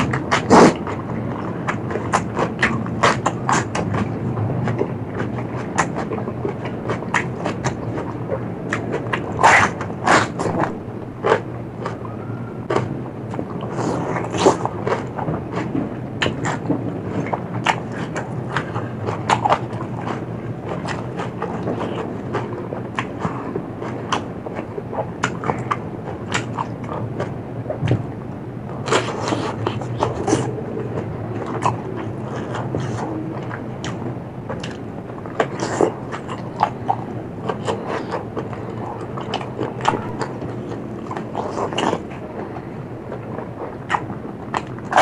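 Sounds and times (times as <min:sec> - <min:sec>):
chewing and crunching food: 0:00.0 - 0:45.0
wet mouth clicks: 0:34.6 - 0:42.2.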